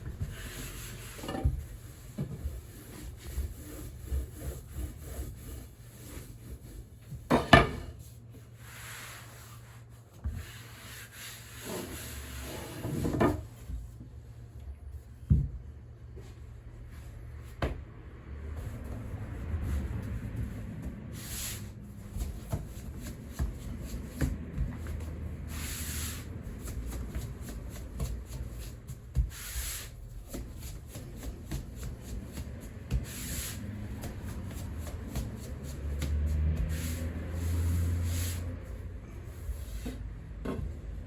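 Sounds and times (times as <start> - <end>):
hands rubbing dough: 0.0 - 7.3, 18.5 - 41.0.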